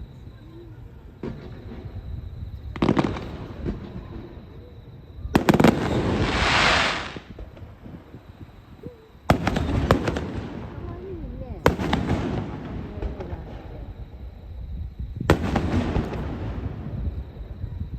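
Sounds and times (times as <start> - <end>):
firework shells bursting: 5.4 - 7.6
firework hiss: 5.4 - 8.1.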